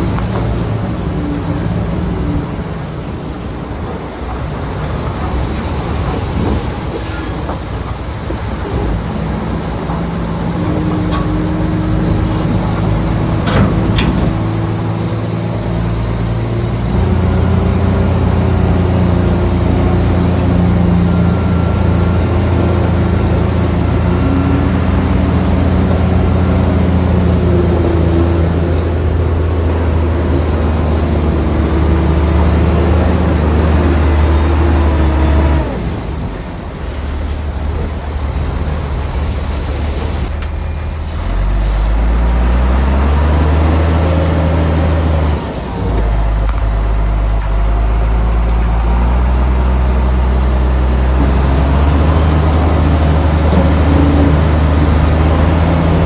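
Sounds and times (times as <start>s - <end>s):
heavy diesel engine droning: 0.0s - 56.0s
metallic clanks: 9.8s - 15.9s.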